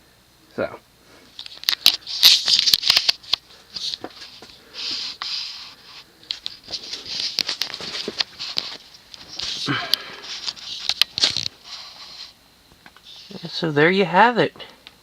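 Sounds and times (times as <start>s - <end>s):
scraping rustles: 3.8s - 12.4s.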